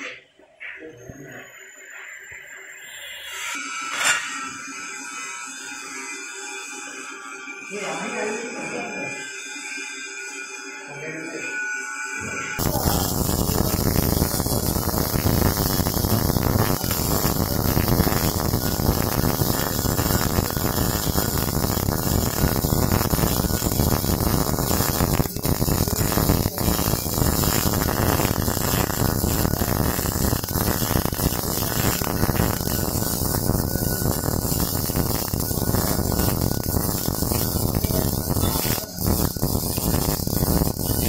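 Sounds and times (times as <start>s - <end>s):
welding arc crackling: 12.6s - 41.0s.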